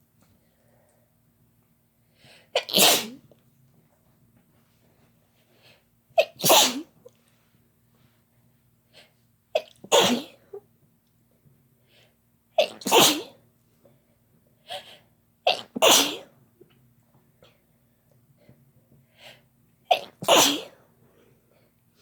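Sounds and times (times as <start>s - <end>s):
loud sneezes: 2.6s - 3.2s, 6.2s - 7.0s, 9.6s - 10.4s, 12.6s - 13.4s, 15.5s - 16.4s, 19.9s - 20.8s.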